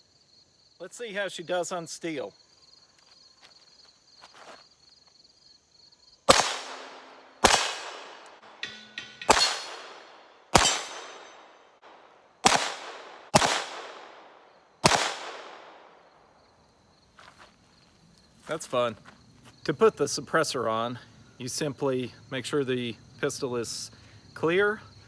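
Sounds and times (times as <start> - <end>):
pistol shots: 6.3 - 16.0.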